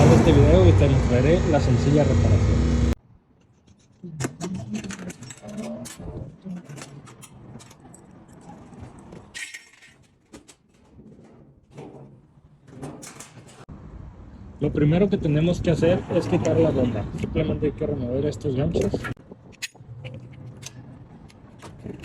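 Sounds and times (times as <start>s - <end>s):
clinks and knocks of handling: 3.4s - 12.0s.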